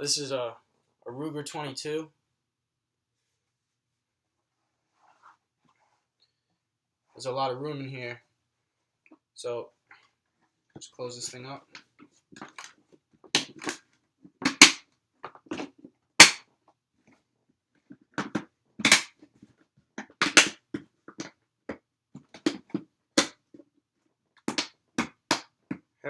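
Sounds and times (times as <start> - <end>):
plastic case clicks and knocks: 13.4 - 13.8, 14.4 - 14.8, 20.0 - 21.3, 24.5 - 25.5.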